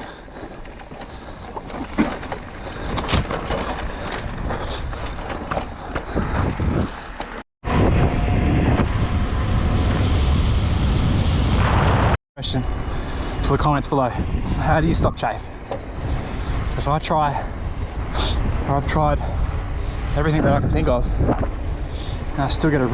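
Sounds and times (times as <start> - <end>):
bike knocks and rattles: 0.0 - 7.4
bike tyre noise on dirt: 0.0 - 7.4
wind rumble on microphone: 0.0 - 22.9.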